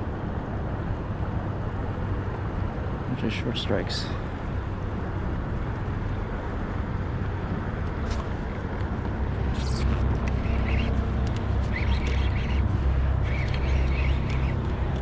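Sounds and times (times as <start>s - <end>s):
wind rumble on microphone: 4.0s - 15.0s
brief crackles: 8.0s - 8.6s.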